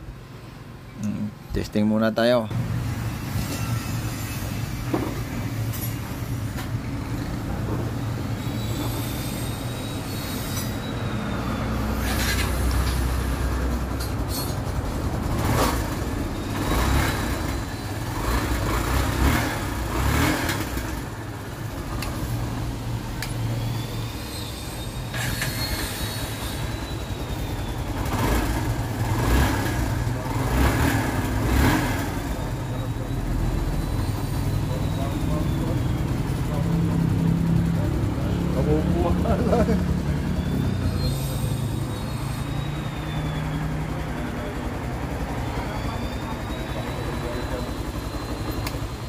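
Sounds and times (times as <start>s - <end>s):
motorcycle engine running: 26.7s - 41.0s, 41.6s - 49.0s.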